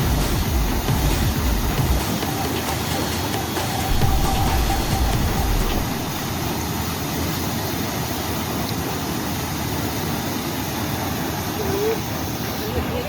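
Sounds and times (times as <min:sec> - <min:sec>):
waterfall rushing: 0:00.0 - 0:12.9
low rumble: 0:03.9 - 0:07.6.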